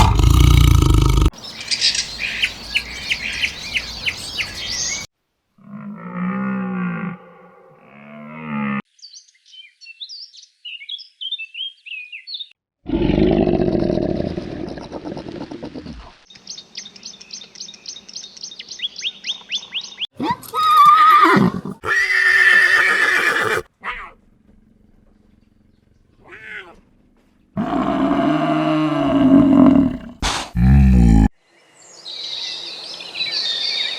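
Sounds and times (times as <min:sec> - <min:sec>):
loud low roar: 0:00.0 - 0:01.3, 0:27.6 - 0:31.3
loud low animal call: 0:00.0 - 0:01.4, 0:27.6 - 0:31.3
high bird-like chirps: 0:01.4 - 0:05.1
horse neighing: 0:20.7 - 0:24.1, 0:27.6 - 0:31.3.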